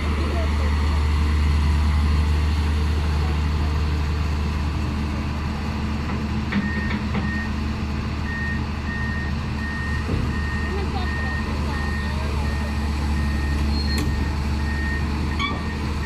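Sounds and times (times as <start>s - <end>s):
heavy diesel engine running: 0.0s - 16.0s
reversing alarm beeping: 6.6s - 7.6s, 8.2s - 16.0s.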